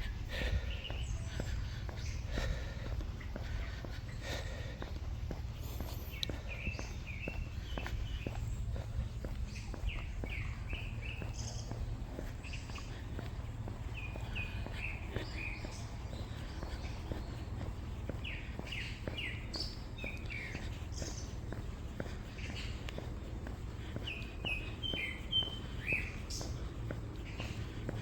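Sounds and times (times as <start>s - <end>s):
low steady rumble: 0.0s - 20.6s
footsteps on a trail: 0.0s - 28.0s
songbird whistling: 18.1s - 21.6s, 24.0s - 26.7s.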